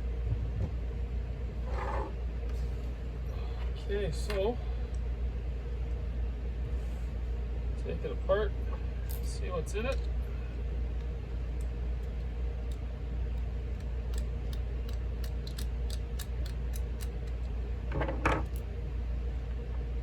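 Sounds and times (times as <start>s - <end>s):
steady low hum: 0.0s - 20.0s
padlock metal clicks: 13.7s - 17.5s.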